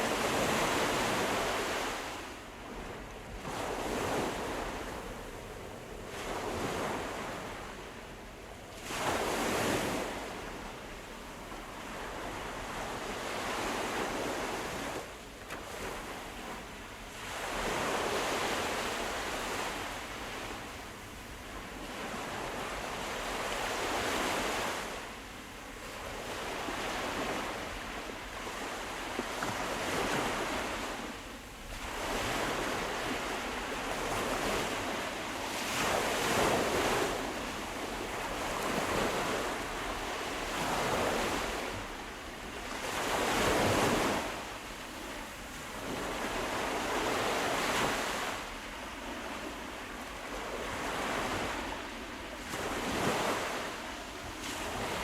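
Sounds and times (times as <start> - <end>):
sea waves breaking: 26.0 - 44.4, 45.0 - 55.0.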